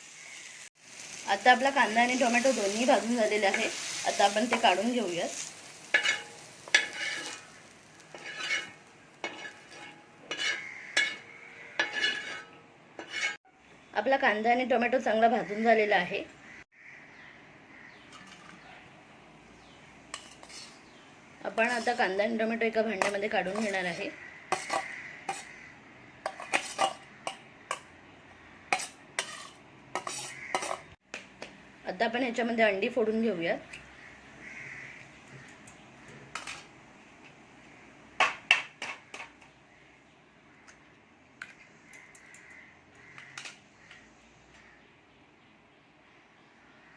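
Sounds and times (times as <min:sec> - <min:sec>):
food sizzling: 0:00.0 - 0:13.4, 0:21.5 - 0:25.5, 0:28.7 - 0:30.9
metal spatula scraping a pan: 0:01.0 - 0:13.4, 0:20.1 - 0:22.2, 0:23.0 - 0:25.6, 0:26.2 - 0:27.9, 0:28.7 - 0:31.0.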